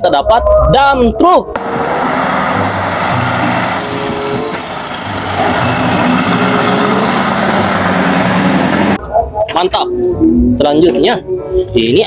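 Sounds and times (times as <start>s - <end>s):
heavy truck engine running: 1.6s - 9.0s.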